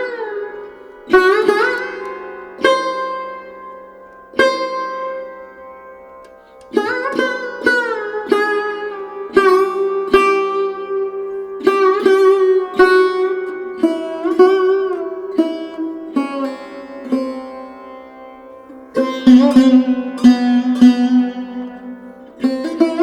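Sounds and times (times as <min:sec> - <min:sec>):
plucked sitar-like string notes: 0:00.0 - 0:23.0.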